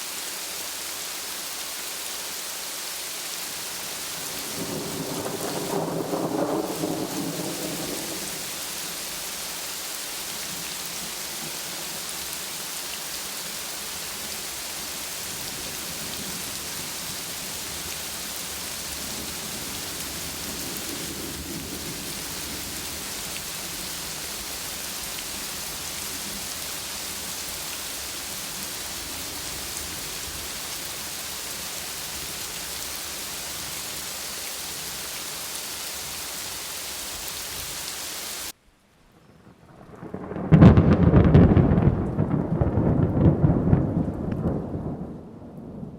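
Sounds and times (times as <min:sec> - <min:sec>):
rain falling steadily: 0:00.0 - 0:45.9
rumble of thunder: 0:04.5 - 0:08.4, 0:39.3 - 0:45.9.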